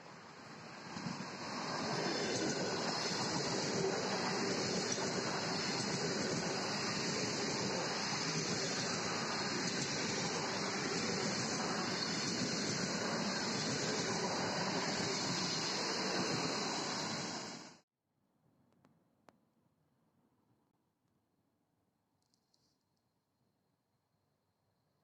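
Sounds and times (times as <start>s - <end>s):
electric train rushing past: 0.0s - 17.8s.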